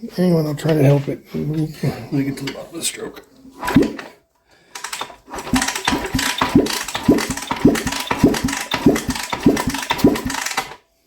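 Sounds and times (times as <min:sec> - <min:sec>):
motorcycle engine cranking: 0:03.6 - 0:10.8.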